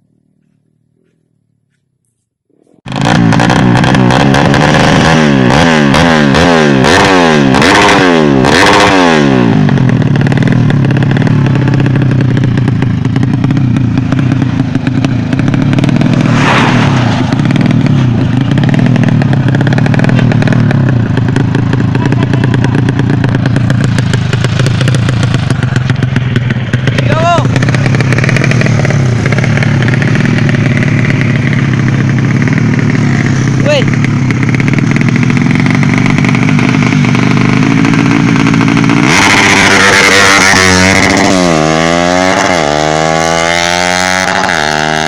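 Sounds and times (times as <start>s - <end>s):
motorcycle engine revving: 2.6s - 45.0s.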